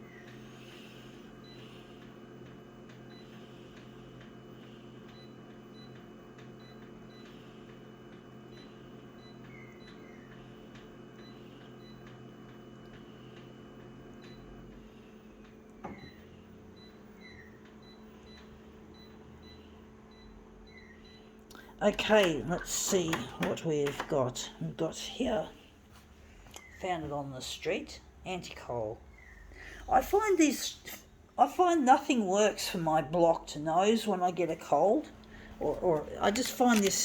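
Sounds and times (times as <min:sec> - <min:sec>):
small electric machine humming: 0:00.0 - 0:25.6.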